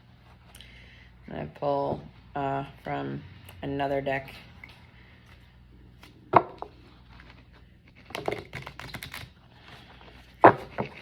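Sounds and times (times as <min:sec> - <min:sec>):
cards being shuffled: 0:06.0 - 0:09.8.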